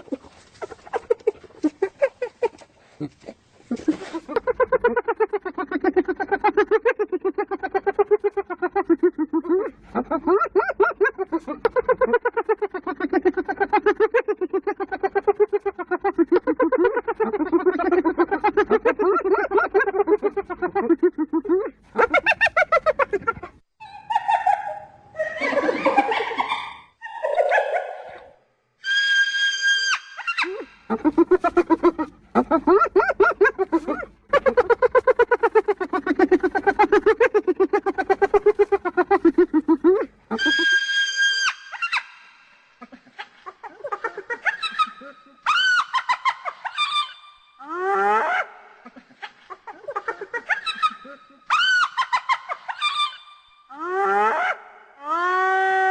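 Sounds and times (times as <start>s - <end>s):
hyenas giggling: 0.0s - 28.4s, 30.3s - 41.0s, 42.8s - 47.2s, 47.8s - 53.2s
hyena wavering calls: 27.0s - 42.7s, 44.4s - 48.8s, 50.4s - 55.9s.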